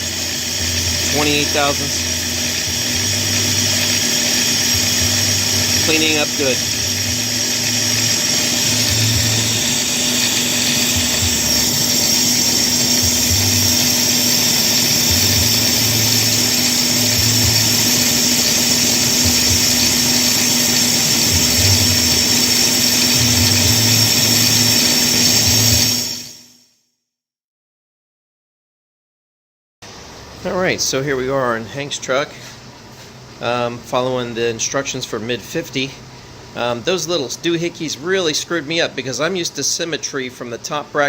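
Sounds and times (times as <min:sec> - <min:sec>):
brake lathe motor hum: 0:00.0 - 0:26.4
high hissing of cutting: 0:00.0 - 0:26.6.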